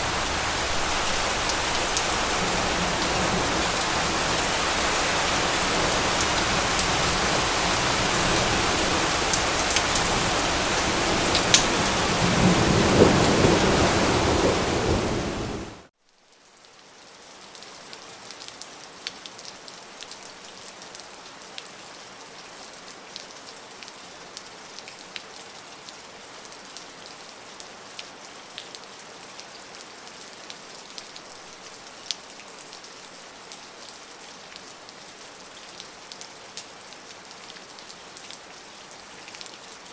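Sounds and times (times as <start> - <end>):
heavy rain: 0.0 - 15.9.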